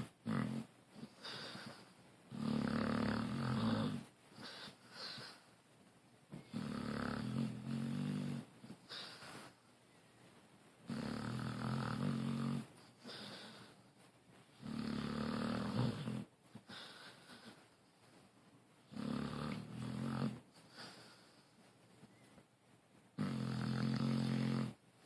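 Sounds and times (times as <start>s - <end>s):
quiet breaths: 0.0s - 25.0s
person snoring: 23.2s - 24.8s.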